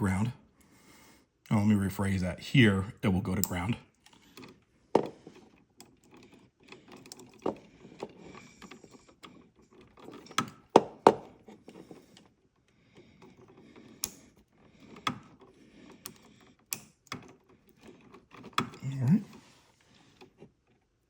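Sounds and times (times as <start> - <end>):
hands rustling wiring: 3.3 - 21.0
sharp plastic clicks and knocks: 3.4 - 12.3.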